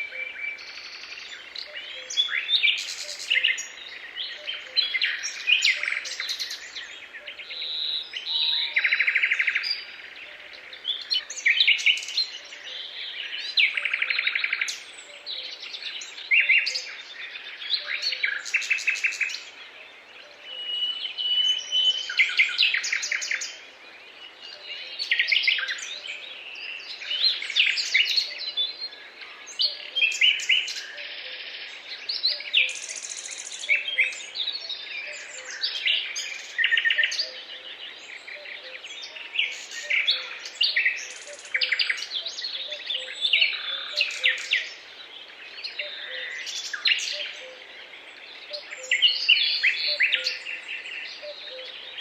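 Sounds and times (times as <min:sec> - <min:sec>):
songbirds chirping and trilling: 0:00.0 - 0:52.0.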